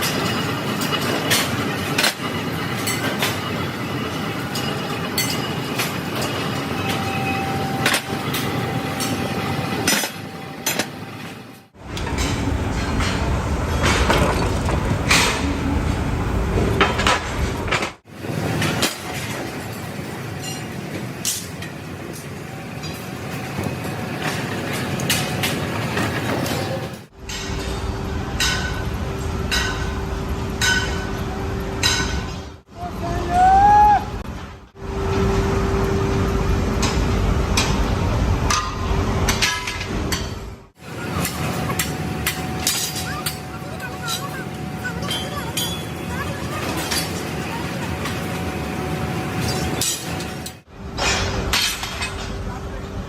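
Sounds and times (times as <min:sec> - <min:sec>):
metal clanks and knocks: 0:00.0 - 0:07.2, 0:11.9 - 0:15.5, 0:16.6 - 0:30.0, 0:30.6 - 0:31.2, 0:31.8 - 0:32.6, 0:36.8 - 0:40.5, 0:49.4 - 0:52.4
machinery rumble: 0:00.0 - 0:53.0
thin workshop background: 0:00.0 - 0:53.0
sharp metal clanks: 0:28.4 - 0:30.0, 0:30.6 - 0:31.2, 0:31.8 - 0:32.5
machine hum: 0:34.1 - 0:39.3.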